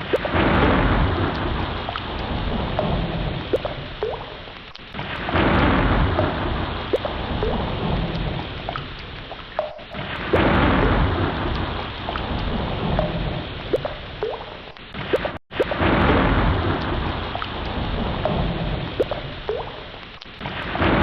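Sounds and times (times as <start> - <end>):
heavy rain falling: 0.0 - 21.0
rolling thunder: 0.1 - 4.1, 5.0 - 8.8, 9.9 - 14.2, 15.0 - 19.7, 20.4 - 21.0
plinking drops: 3.6 - 4.4, 9.6 - 10.0.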